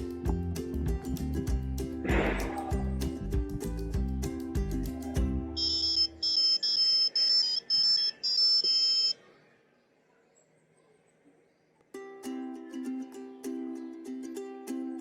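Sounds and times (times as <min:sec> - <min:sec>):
high-pitched electronic beeps: 0:05.6 - 0:09.2.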